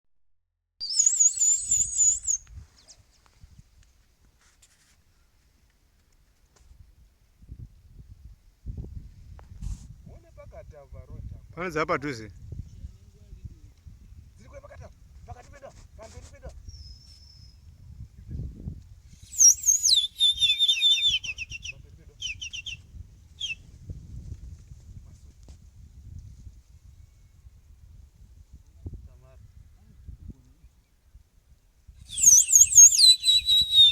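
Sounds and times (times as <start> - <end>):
bird giving a high wavering call: 0.8 - 2.4, 19.3 - 22.8, 32.1 - 33.9
faint rustles and soft clicks: 2.3 - 6.9.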